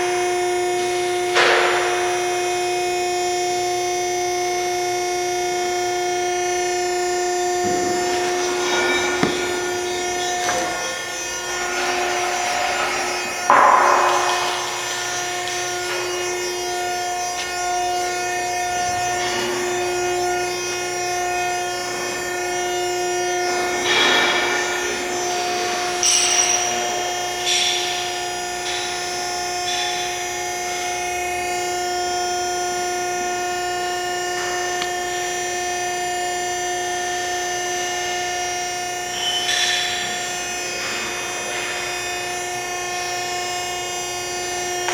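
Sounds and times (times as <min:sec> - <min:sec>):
power tool machine whine: 0:00.0 - 0:44.9
rough grinding noise: 0:06.4 - 0:30.4
sharp knocks: 0:07.6 - 0:18.0.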